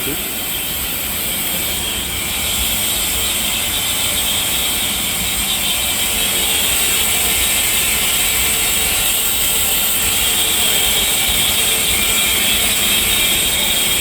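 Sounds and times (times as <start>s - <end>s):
machine noise with high hiss: 0.0s - 14.0s.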